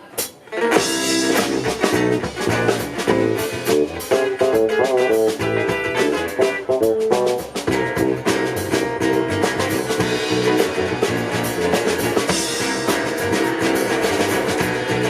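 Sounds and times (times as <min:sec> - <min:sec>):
guitar playing: 0:00.0 - 0:15.0
steady drum beat: 0:00.0 - 0:15.0.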